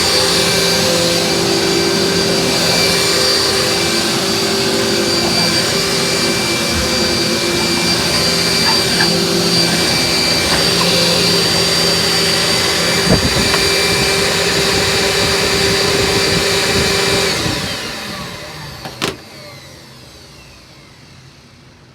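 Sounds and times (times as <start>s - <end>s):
vacuum cleaner motor whining: 0.0s - 21.9s.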